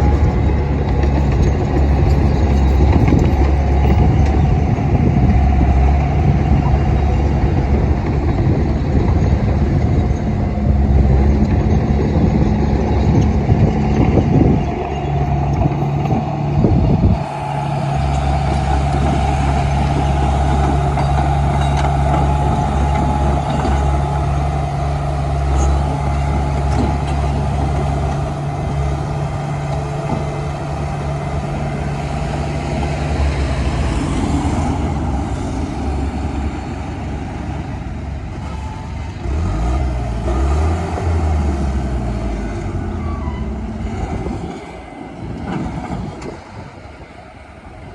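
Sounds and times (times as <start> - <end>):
bulldozer diesel engine running: 0.0 - 47.9.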